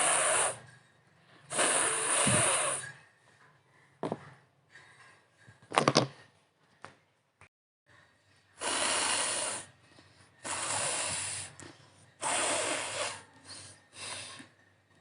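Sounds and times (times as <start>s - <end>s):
person blowing nose: 0.0s - 0.6s, 1.5s - 2.9s, 8.6s - 9.7s, 10.5s - 11.5s, 12.2s - 13.3s.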